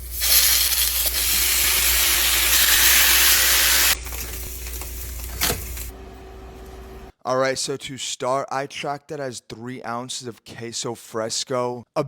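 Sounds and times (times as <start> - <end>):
loud steady hiss: 0.0 - 5.9.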